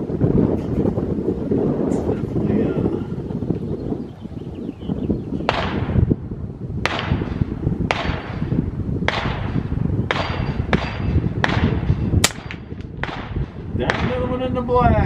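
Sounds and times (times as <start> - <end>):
wind rumble on microphone: 0.0 - 15.0
gunshots with echo: 5.4 - 6.1, 6.8 - 14.4.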